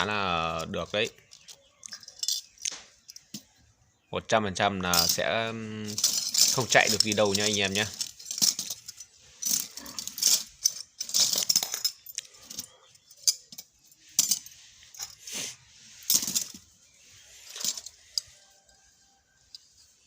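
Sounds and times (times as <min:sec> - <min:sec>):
metal rat trap clinking: 0:00.0 - 0:03.5, 0:04.9 - 0:15.2, 0:16.1 - 0:16.7, 0:17.5 - 0:18.7.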